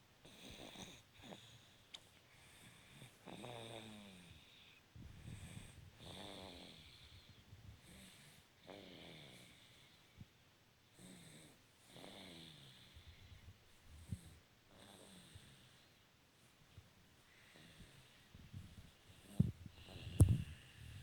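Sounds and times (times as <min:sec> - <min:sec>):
faint slow snoring: 0:02.5 - 0:04.5, 0:05.2 - 0:10.0, 0:10.9 - 0:13.2, 0:14.0 - 0:16.0.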